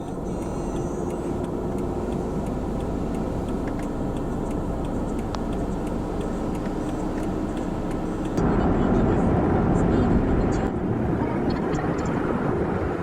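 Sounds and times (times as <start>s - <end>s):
faint regular ticking: 0.0s - 8.4s
car road and engine noise: 0.0s - 13.0s.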